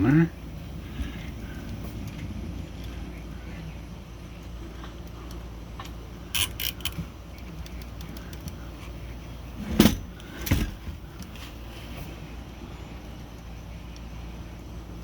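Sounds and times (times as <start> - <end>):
steady low hum: 0.0 - 15.0
small metallic clicks: 5.0 - 8.7.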